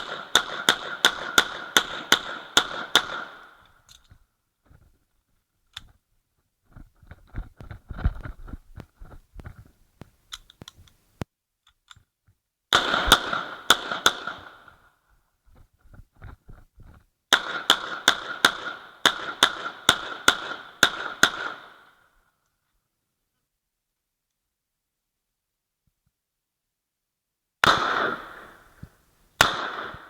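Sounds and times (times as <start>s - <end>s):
pistol shots with ringing tail: 0.0s - 3.6s, 12.7s - 14.8s, 17.3s - 22.0s, 27.6s - 28.8s, 29.4s - 30.0s
gun handling clicks: 3.6s - 4.2s, 5.7s - 6.0s, 9.4s - 11.0s.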